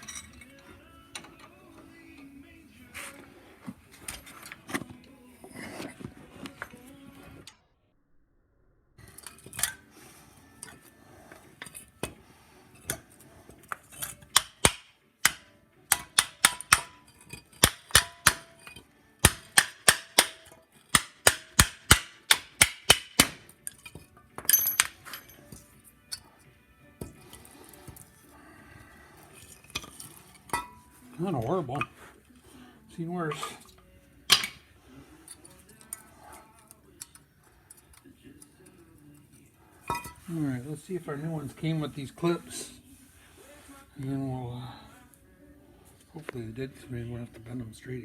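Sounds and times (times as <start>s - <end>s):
metallic clicks of tools: 9.0s - 9.8s, 13.7s - 26.3s, 35.2s - 38.8s.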